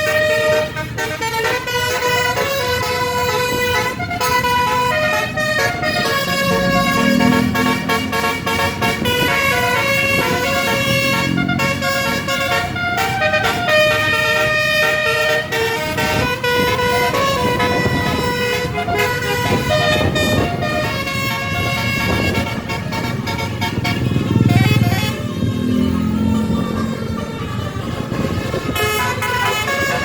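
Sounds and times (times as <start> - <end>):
bus musical horn melody: 0.0 - 30.0.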